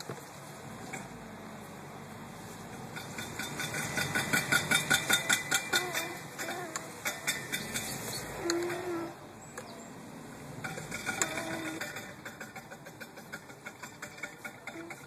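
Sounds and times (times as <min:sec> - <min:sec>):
low vehicle rumble: 0:00.0 - 0:15.0
metallic clicking and pinging: 0:02.9 - 0:08.8, 0:10.6 - 0:15.0.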